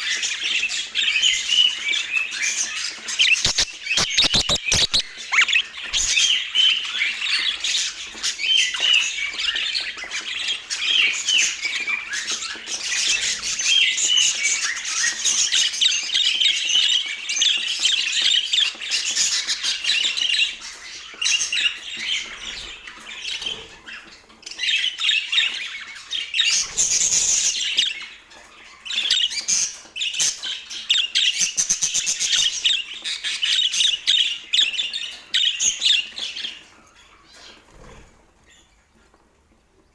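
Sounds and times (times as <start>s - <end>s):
budgerigars chattering: 3.1s - 6.3s.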